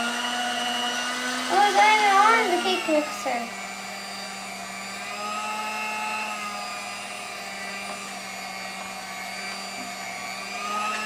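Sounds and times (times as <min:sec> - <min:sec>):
beaters churning slime: 0:00.0 - 0:11.0
electric hand mixer whining: 0:00.0 - 0:11.0.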